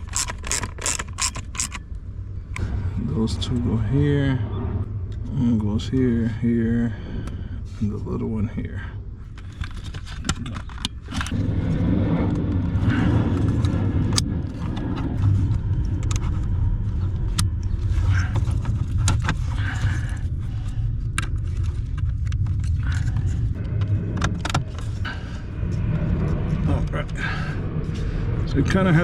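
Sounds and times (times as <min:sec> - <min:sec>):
plastic parts clicking and rattling: 0:00.0 - 0:01.9, 0:09.3 - 0:11.4
low rumble: 0:00.0 - 0:29.0.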